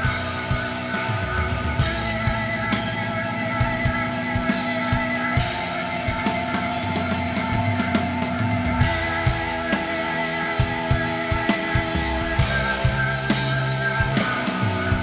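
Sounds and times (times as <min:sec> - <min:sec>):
distorted guitar chords: 0:00.0 - 0:15.0.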